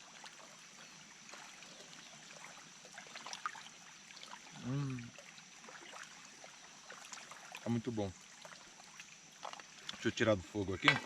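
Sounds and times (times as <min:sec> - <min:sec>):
man humming approval: 0:04.6 - 0:05.1.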